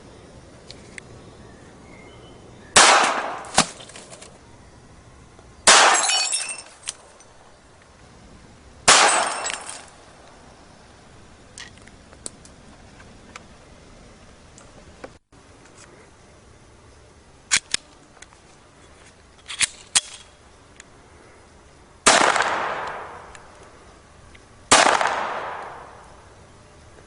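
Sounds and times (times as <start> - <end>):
gas pistol shots: 2.8 - 3.7, 5.7 - 6.2, 8.9 - 9.8, 22.1 - 23.3, 24.7 - 25.9.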